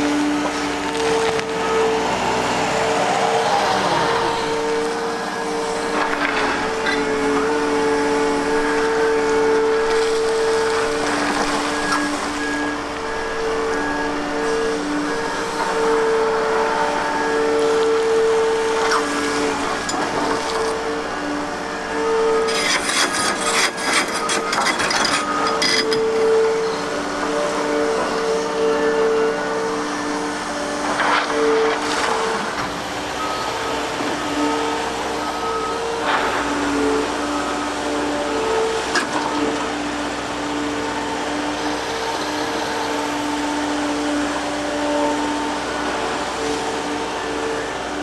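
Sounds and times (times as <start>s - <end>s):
excavator whine: 0.0s - 48.0s
scraping and knocking: 18.1s - 26.6s.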